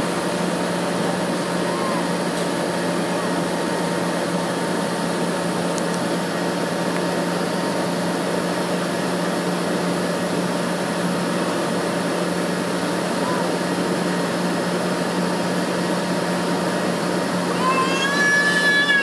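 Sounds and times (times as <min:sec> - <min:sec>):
low cabin hum: 0:16.8 - 0:19.0.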